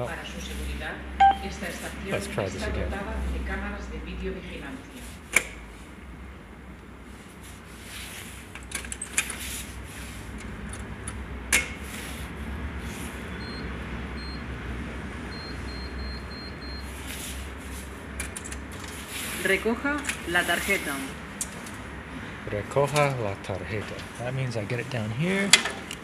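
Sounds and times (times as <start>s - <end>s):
short high beeps: 1.2s - 1.6s.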